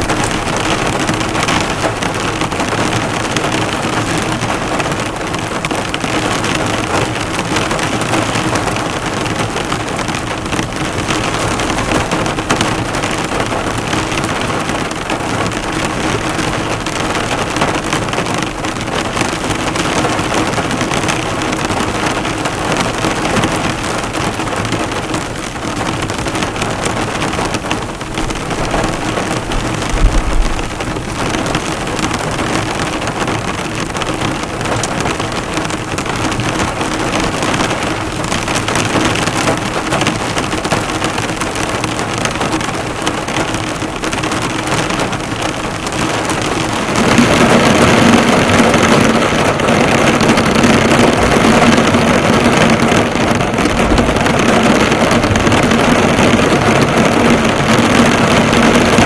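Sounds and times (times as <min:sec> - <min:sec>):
heavy rain on a car: 0:00.0 - 0:59.0.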